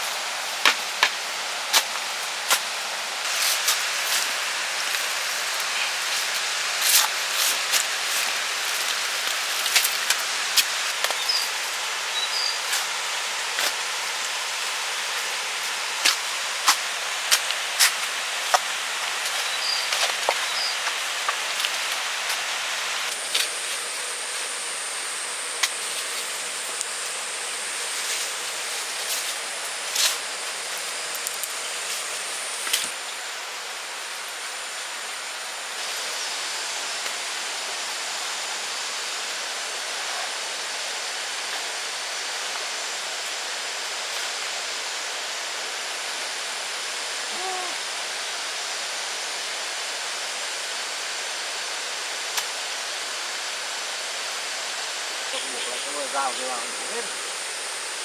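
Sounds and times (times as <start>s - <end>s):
steady outdoor hiss: 0.0s - 58.0s.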